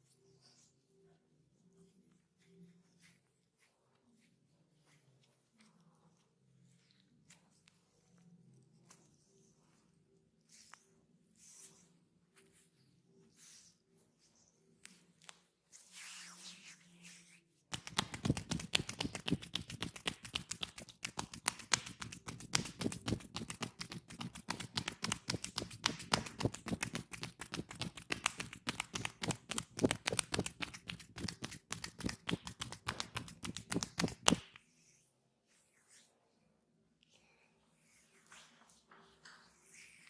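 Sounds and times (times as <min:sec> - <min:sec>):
hands tapping on skin: 0:17.7 - 0:34.6.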